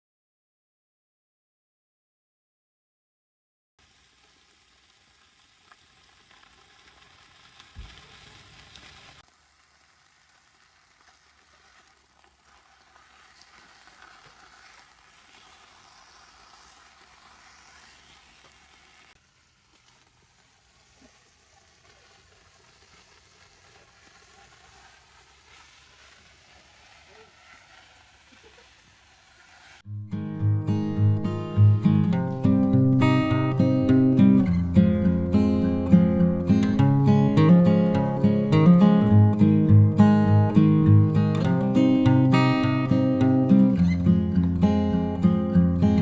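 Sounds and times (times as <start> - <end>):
food sizzling in a pan: 3.8 - 29.9.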